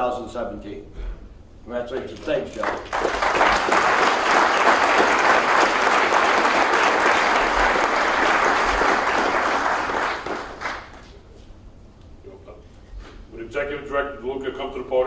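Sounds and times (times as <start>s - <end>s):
audience applauding: 2.5s - 11.2s.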